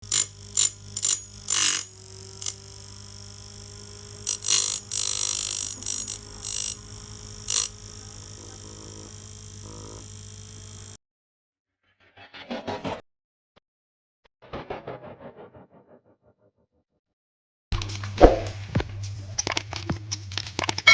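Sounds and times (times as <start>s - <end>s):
fan motor humming: 0.0s - 11.0s
harsh high grinding: 0.0s - 11.0s.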